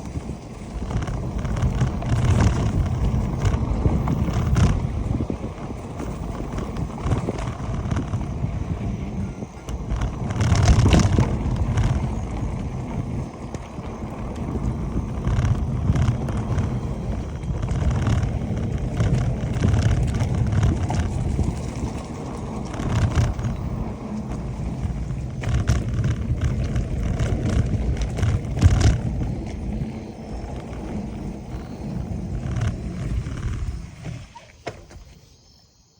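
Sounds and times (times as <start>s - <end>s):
wind buffeting microphone: 0.0s - 34.4s
mountain bike rattling on trail: 0.0s - 35.5s.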